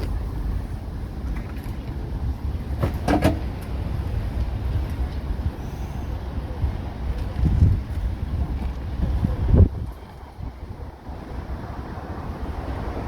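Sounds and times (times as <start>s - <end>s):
road traffic rumble: 0.0s - 13.0s
wind on microphone: 3.8s - 13.0s.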